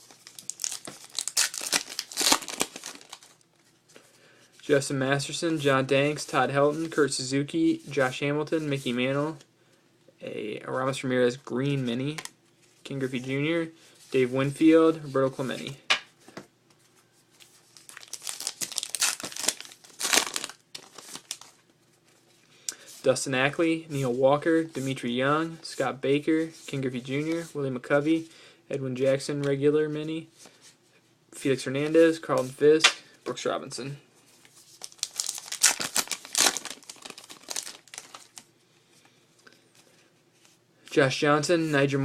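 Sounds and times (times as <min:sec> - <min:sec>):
wrapper crinkling and tearing: 0:00.0 - 0:03.5, 0:17.7 - 0:21.6, 0:34.7 - 0:38.5.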